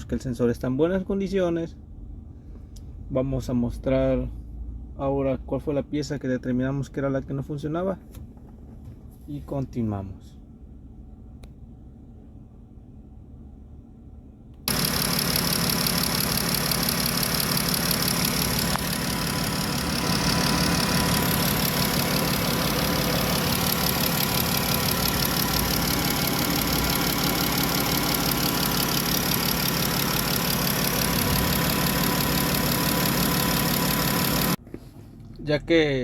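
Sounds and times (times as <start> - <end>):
car engine idling: 10.8 - 34.6.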